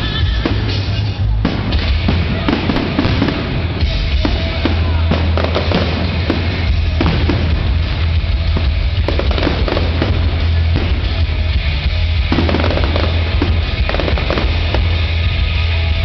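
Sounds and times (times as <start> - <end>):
fireworks bursting: 0.0 - 16.0
music playing: 0.0 - 16.0.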